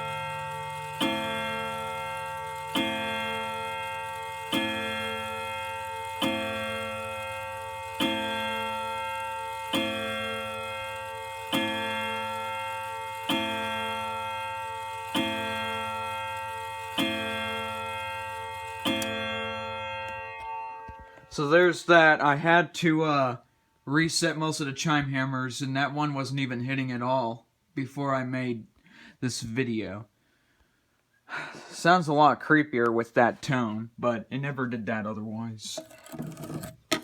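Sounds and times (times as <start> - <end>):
grandfather clock chiming: 0.0 - 22.1.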